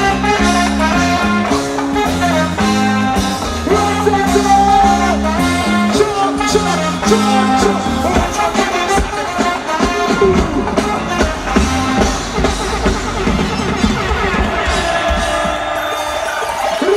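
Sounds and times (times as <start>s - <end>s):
live reggae band: 0.0s - 16.9s
person singing: 3.6s - 11.3s.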